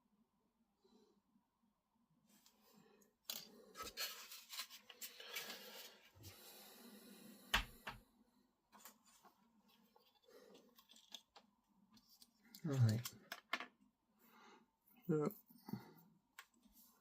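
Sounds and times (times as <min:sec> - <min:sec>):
plastic parts clicking and rustling: 0:03.2 - 0:06.0, 0:08.8 - 0:13.8.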